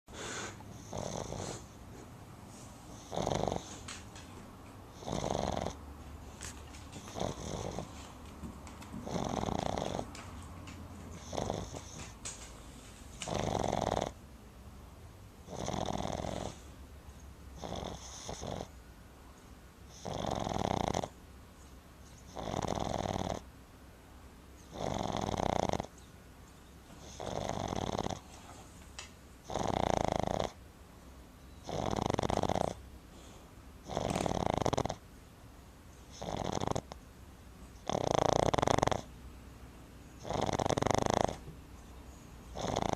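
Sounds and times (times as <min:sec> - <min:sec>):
puppy snoring loudly: 0:00.2 - 0:01.8, 0:02.9 - 0:03.9, 0:04.9 - 0:05.9, 0:07.0 - 0:08.0, 0:09.0 - 0:10.4, 0:11.1 - 0:12.4, 0:13.2 - 0:14.2, 0:15.4 - 0:16.8, 0:17.6 - 0:18.8, 0:19.9 - 0:21.2, 0:22.3 - 0:23.5, 0:24.6 - 0:25.9, 0:27.0 - 0:28.3, 0:29.4 - 0:30.6, 0:31.6 - 0:32.9, 0:33.8 - 0:35.0, 0:36.1 - 0:37.0, 0:37.8 - 0:39.1, 0:40.2 - 0:41.5, 0:42.5 - 0:42.9.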